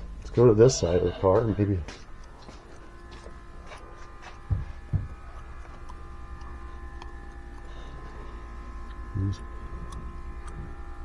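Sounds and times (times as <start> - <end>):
steady hum of held tones: 0.0 - 11.0
dull thumps: 4.4 - 5.2.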